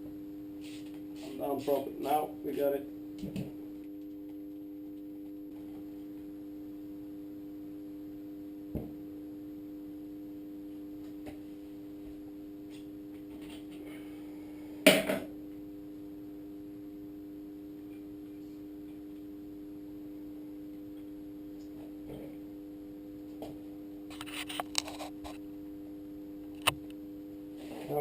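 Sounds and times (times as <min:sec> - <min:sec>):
steady background hum: 0:00.0 - 0:28.0.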